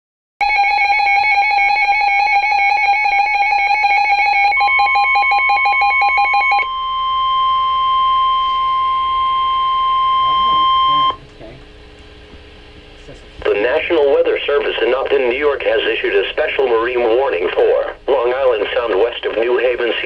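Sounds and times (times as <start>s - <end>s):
pulsing electronic alarm: 0.4s - 11.2s.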